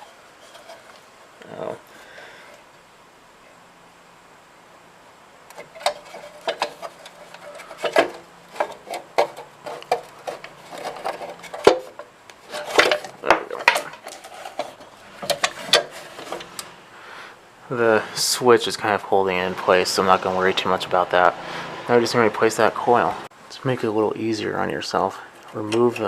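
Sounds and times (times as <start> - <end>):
engine cover rattling: 5.5 - 16.6.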